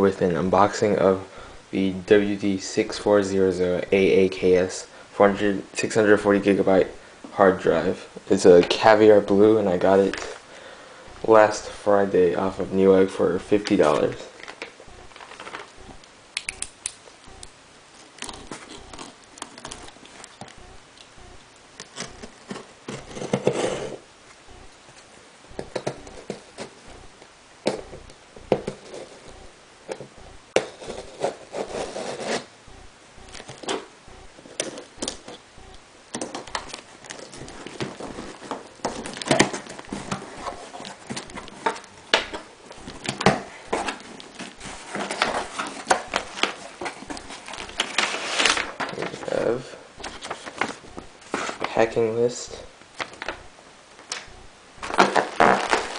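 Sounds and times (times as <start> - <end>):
packing material rustling: 11.2 - 21.1, 24.9 - 29.4, 30.0 - 32.5, 36.1 - 55.9
cardboard box being opened: 54.8 - 55.9.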